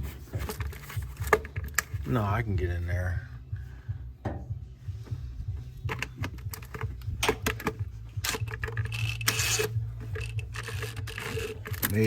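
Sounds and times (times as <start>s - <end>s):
steady low hum: 0.0s - 12.0s
tools clicking on plastic parts: 5.9s - 12.0s.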